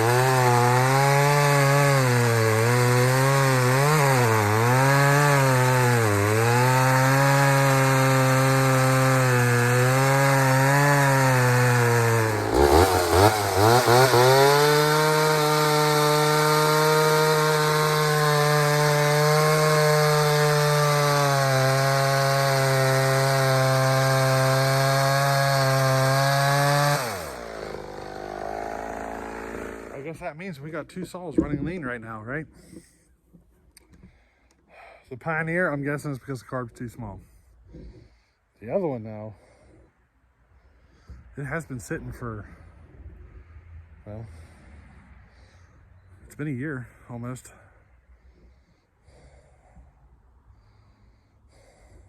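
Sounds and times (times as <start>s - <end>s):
chainsaw cutting wood: 0.0s - 30.3s.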